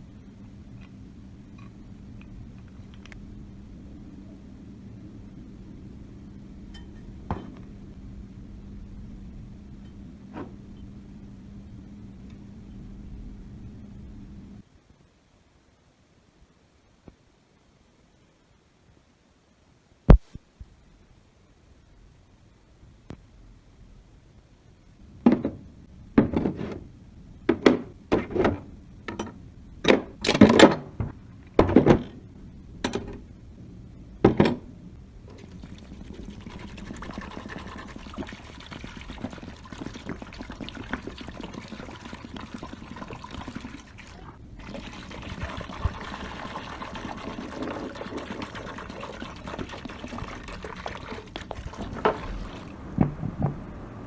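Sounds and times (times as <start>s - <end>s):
liquid pouring: 35.3s - 52.7s.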